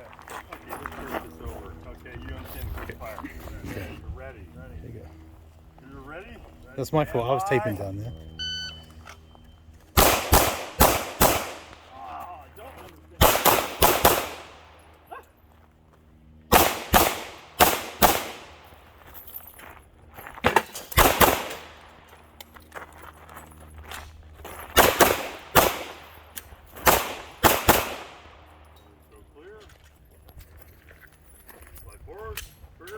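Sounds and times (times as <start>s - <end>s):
gunshots with echo: 10.0s - 11.9s, 13.2s - 14.8s, 16.5s - 18.7s, 20.5s - 22.0s, 24.8s - 28.5s.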